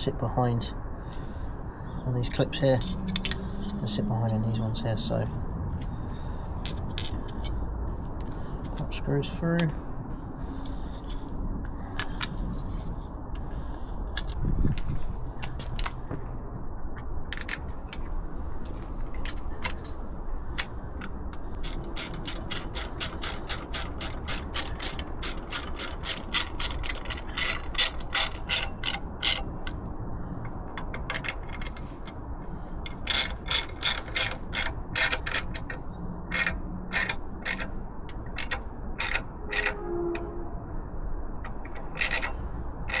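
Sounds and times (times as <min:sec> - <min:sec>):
hand ratchet clicking: 0:21.6 - 0:29.8, 0:32.8 - 0:39.8, 0:41.4 - 0:43.0.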